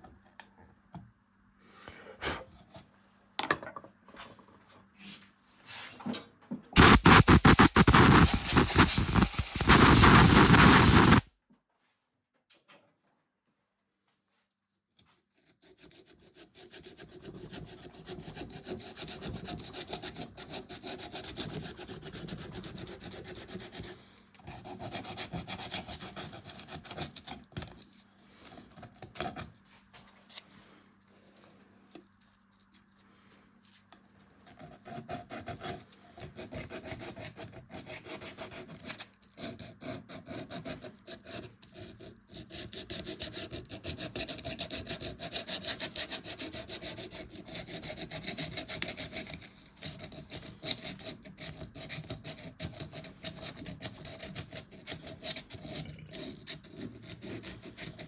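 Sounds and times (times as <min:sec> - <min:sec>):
wood being scraped by hand: 0:06.8 - 0:11.3.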